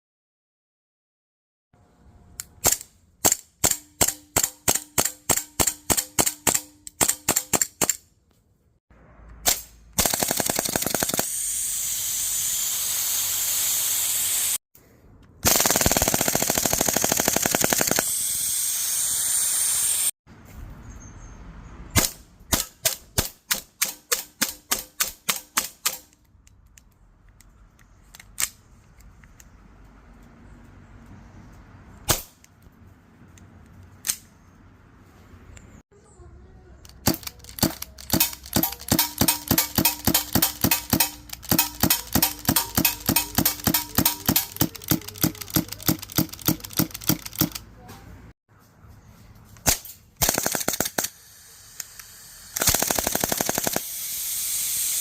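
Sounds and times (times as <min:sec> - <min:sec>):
airsoft guns firing: 0:09.4 - 0:11.4, 0:15.4 - 0:18.2, 0:37.0 - 0:47.6, 0:49.6 - 0:51.2, 0:52.6 - 0:53.9.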